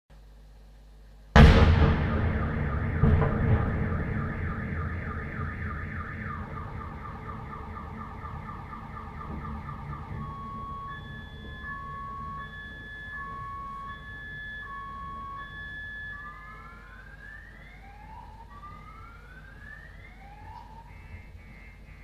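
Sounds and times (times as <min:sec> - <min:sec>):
smaller thud: 0:01.4 - 0:11.2
explosion blast with rumbling: 0:01.4 - 0:11.8
car alarms chirping: 0:02.6 - 0:16.9.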